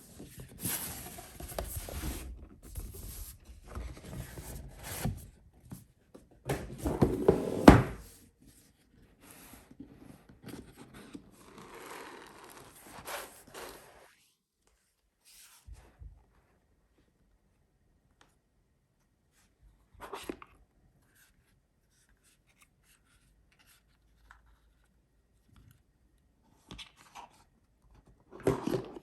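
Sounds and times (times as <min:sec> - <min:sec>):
cardboard rustling and scraping: 0:00.0 - 0:05.4, 0:06.6 - 0:08.2.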